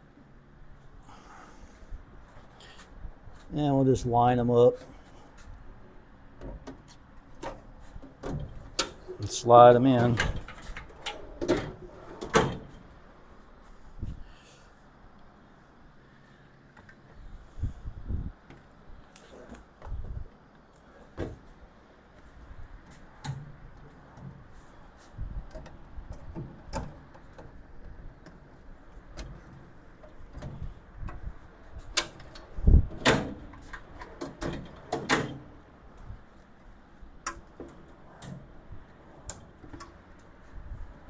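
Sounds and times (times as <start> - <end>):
metal drawers clicking and knocking: 6.4 - 12.9, 25.5 - 35.6.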